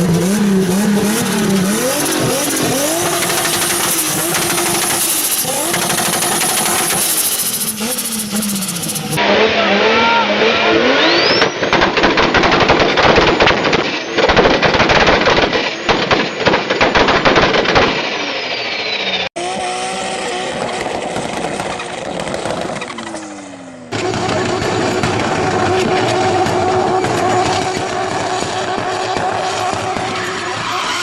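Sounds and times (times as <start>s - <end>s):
turbo car engine revving: 0.0s - 12.0s, 18.8s - 31.0s
turbo whistle: 1.8s - 11.6s.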